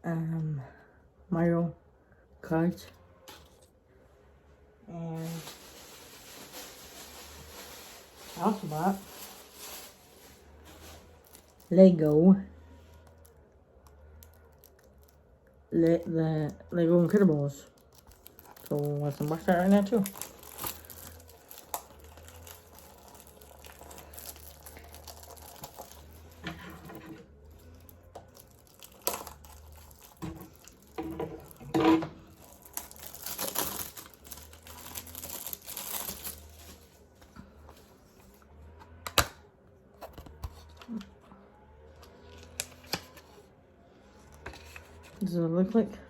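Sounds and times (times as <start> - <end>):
packaging rustling: 5.2 - 39.1.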